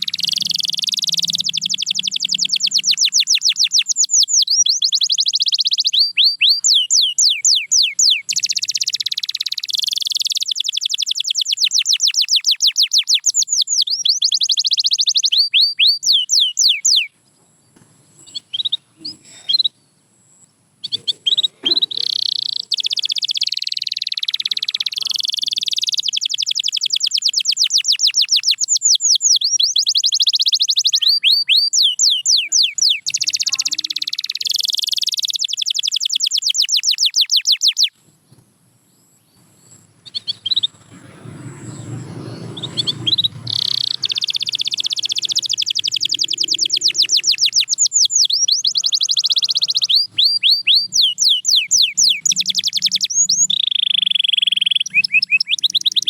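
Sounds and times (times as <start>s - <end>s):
low noise: 0.0s - 4.8s, 37.9s - 56.0s
canary singing trills: 0.0s - 17.3s, 18.1s - 38.0s, 39.0s - 56.0s.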